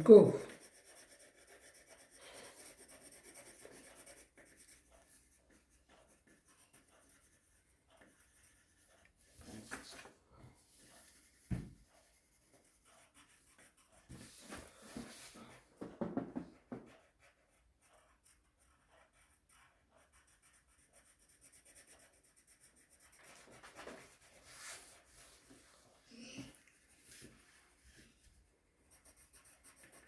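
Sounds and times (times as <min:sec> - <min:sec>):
pencil scratching on paper: 0:00.0 - 0:30.0
knock: 0:11.5 - 0:11.8, 0:15.8 - 0:16.9.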